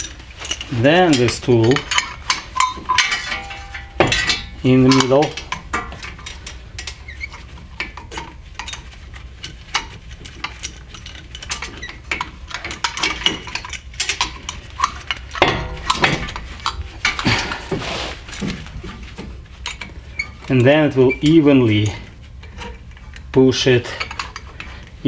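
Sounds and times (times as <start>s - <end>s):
metal tools clinking: 12.9s - 20.3s
metal scraping: 15.6s - 19.0s.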